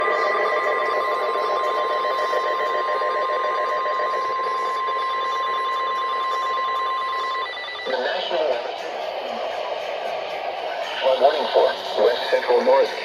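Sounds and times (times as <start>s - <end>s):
steady alarm beep: 0.0s - 12.7s
radio hiss: 7.9s - 13.0s.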